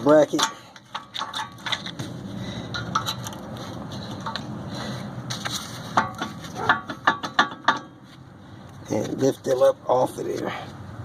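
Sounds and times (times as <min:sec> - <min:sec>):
metal clicks and knocks: 0:00.0 - 0:03.5, 0:04.1 - 0:04.5, 0:05.9 - 0:08.0
metal scraping and creaking: 0:00.0 - 0:09.6.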